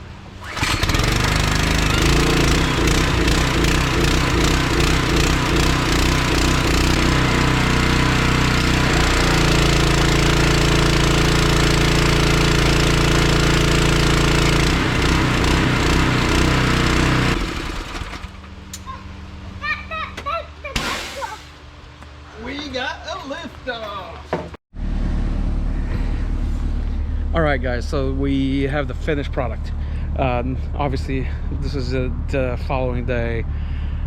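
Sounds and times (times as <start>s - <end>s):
pressure washer petrol engine running: 0.0s - 18.8s.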